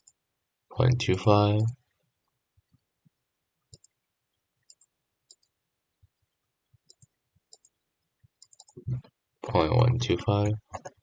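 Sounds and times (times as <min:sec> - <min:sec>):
computer mouse clicks: 0:03.7 - 0:04.0, 0:04.6 - 0:05.5, 0:06.8 - 0:07.8, 0:08.4 - 0:09.1.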